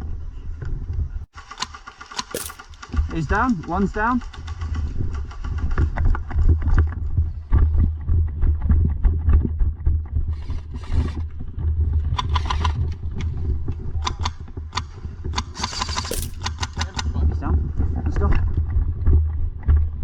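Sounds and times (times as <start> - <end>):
short sharp clicks and knocks: 1.5 - 3.2, 14.0 - 17.0.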